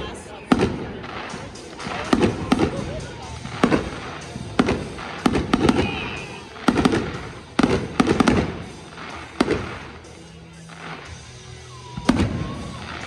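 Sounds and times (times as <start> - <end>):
fireworks bursting with echoing bangs: 0.0 - 13.0.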